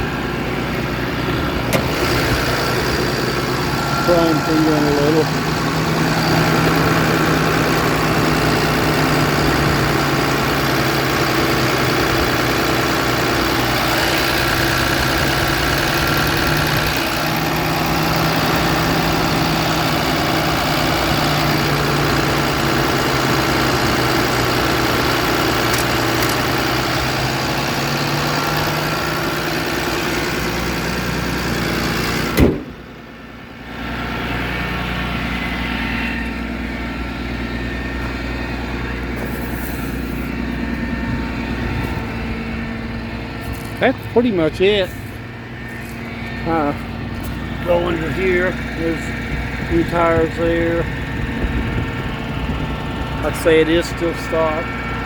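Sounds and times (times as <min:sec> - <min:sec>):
truck engine idling: 0:00.0 - 0:55.0
sharp knock: 0:32.4 - 0:32.7.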